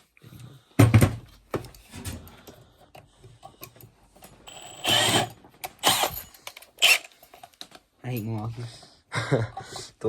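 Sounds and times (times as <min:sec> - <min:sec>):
cordless power tool motor: 0:04.5 - 0:06.2, 0:06.8 - 0:07.1.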